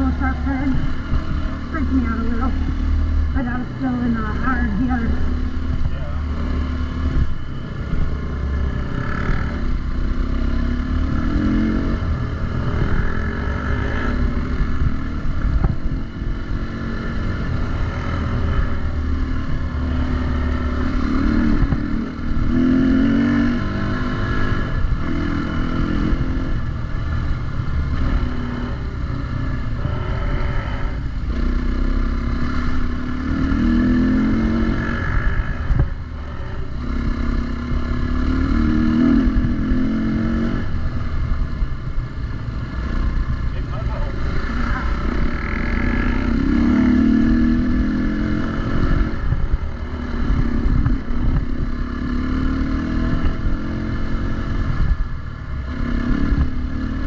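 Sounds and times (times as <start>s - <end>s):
dirt bike engine revving: 0.0s - 41.7s, 42.6s - 57.0s.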